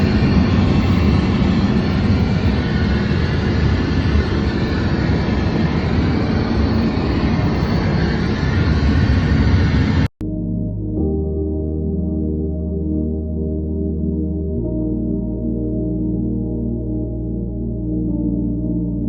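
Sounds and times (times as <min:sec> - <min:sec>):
jet engine low rumble: 0:00.0 - 0:10.1.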